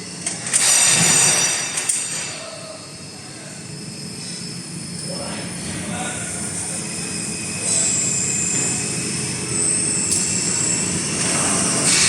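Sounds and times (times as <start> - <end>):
high-pitched metallic screeching: 0.5 - 12.0
welding machine running: 6.4 - 12.0.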